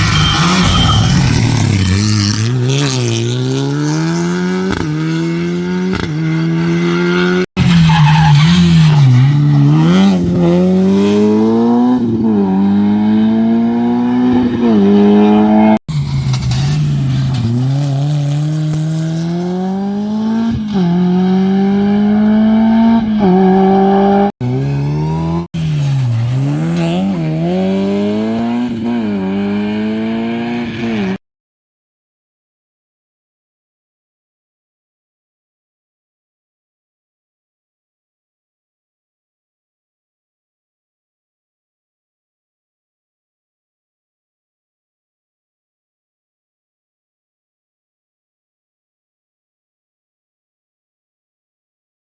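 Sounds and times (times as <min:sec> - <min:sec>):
rally car engines revving: 0:00.0 - 0:31.2.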